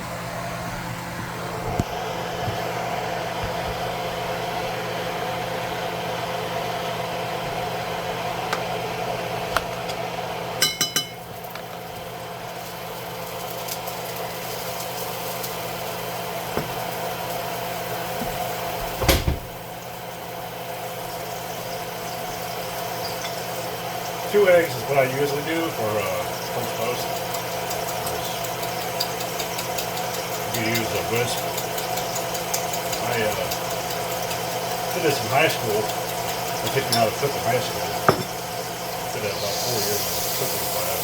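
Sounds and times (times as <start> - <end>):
kitchen appliance humming: 0.0 - 41.0
kitchenware clinking: 10.6 - 11.3, 35.1 - 38.7
kitchenware knock: 38.0 - 38.4.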